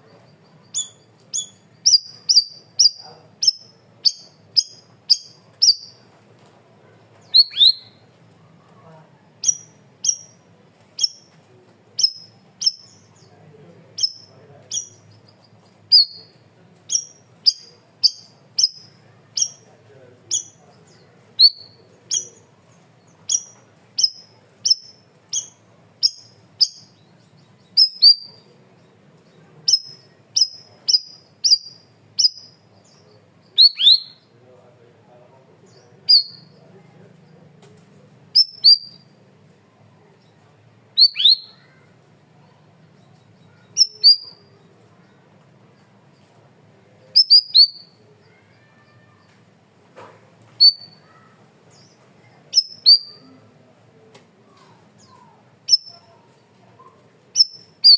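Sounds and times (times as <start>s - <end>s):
faint low hum: 0.0s - 57.9s
songbird sharp high calls: 0.6s - 6.0s, 7.2s - 8.0s, 9.4s - 10.4s, 11.0s - 11.3s, 12.0s - 13.3s, 14.0s - 15.1s, 15.9s - 19.7s, 20.3s - 22.4s, 23.0s - 28.5s, 29.6s - 34.3s, 35.7s - 36.6s, 38.4s - 39.2s, 41.0s - 41.8s, 43.4s - 44.6s, 47.2s - 48.0s, 50.6s - 53.3s, 55.0s - 56.1s, 57.4s - 57.9s.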